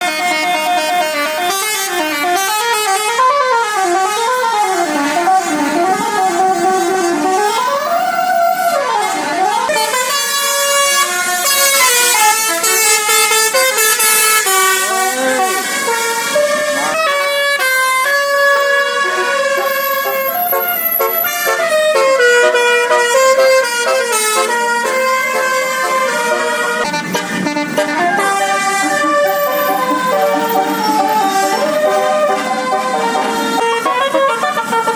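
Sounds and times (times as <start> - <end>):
bus horn playing melody: 0.0 - 34.9.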